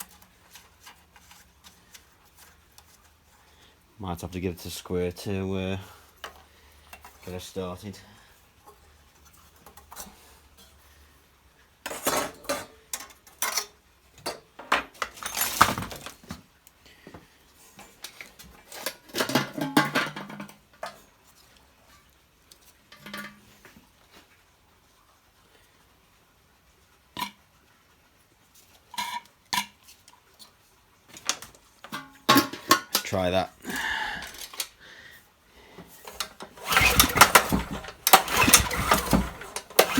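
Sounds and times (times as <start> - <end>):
metal tools clinking and tapping: 11.9 - 16.0, 18.1 - 21.0, 22.9 - 23.6, 31.2 - 33.2.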